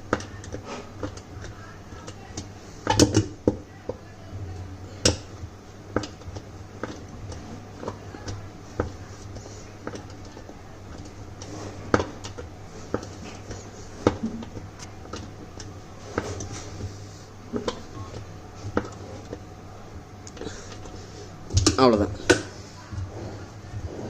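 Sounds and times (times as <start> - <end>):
steady low hum: 0.0 - 24.0.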